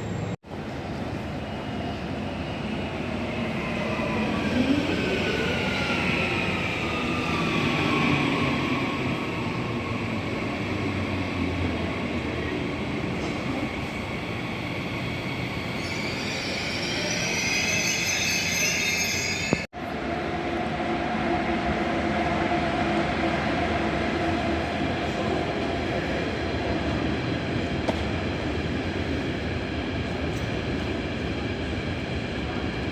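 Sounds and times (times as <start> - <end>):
train low hum: 0.0 - 32.9
train wheels squealing: 13.2 - 19.7.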